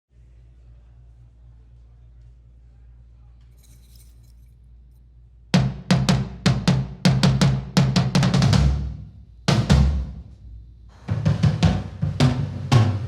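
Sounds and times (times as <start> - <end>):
low steady hum: 0.1 - 5.6
drum kit kick and snare: 5.6 - 13.0.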